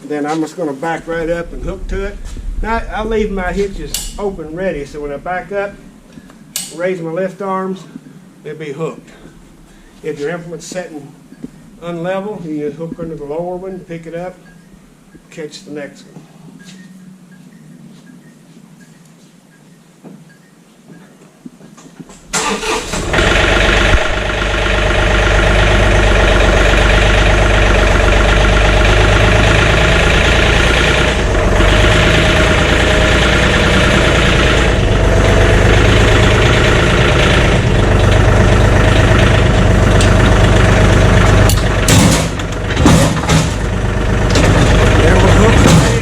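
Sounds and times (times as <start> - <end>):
tractor engine starting and running: 0.7 - 6.9, 22.2 - 46.0.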